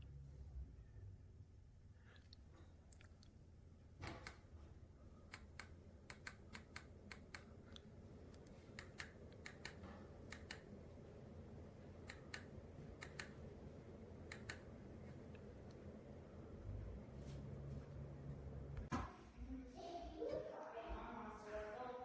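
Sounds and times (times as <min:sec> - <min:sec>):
ceiling fan air rush: 0:03.4 - 0:18.9
faint sharp clicks: 0:14.3 - 0:14.7.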